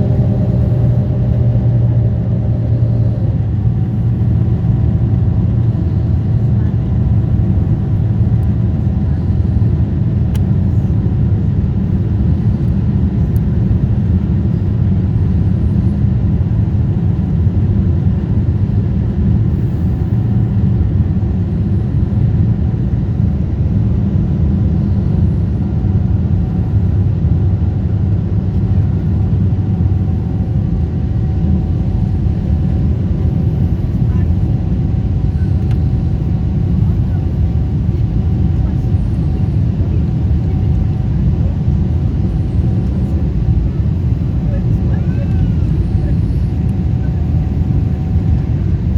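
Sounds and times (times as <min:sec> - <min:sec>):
faint steady tones: 0:00.0 - 0:07.6
airliner low rumble: 0:00.0 - 0:48.9.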